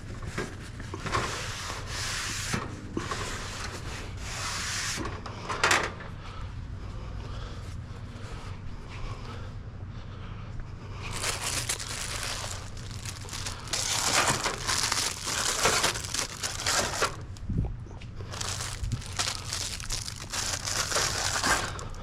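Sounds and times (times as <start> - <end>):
plastic packaging crinkling: 11.1 - 17.4, 18.3 - 22.0.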